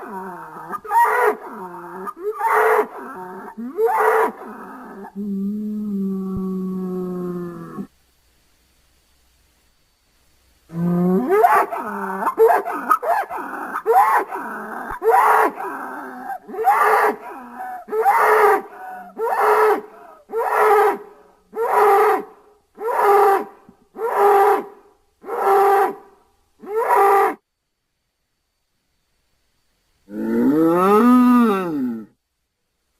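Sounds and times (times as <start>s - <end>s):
bull calling: 0.0s - 7.9s, 10.7s - 27.4s.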